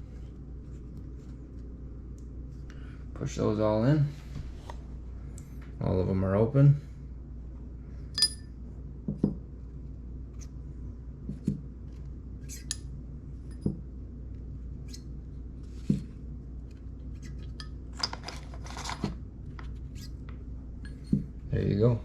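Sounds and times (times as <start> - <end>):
metal valves clinking: 8.2 - 8.5.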